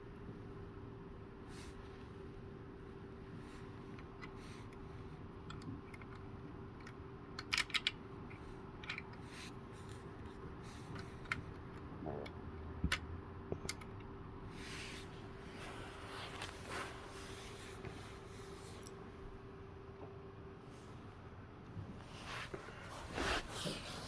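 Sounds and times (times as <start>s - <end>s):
faint steady hum: 0.0s - 24.0s
plastic toy bricks clicking: 6.8s - 8.0s.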